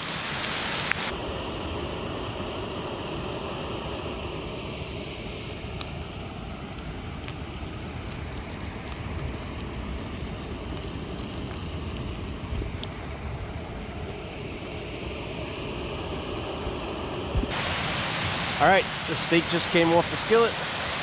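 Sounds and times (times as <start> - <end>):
waterfall rushing: 0.0 - 14.0, 17.4 - 21.0
steak sizzling in a skillet: 5.0 - 14.4.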